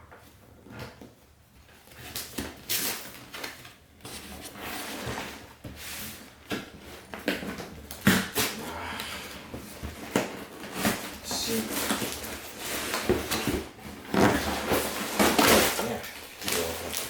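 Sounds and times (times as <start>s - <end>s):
plastic bags rustling: 6.2s - 17.0s
cardboard box opening: 7.2s - 17.0s.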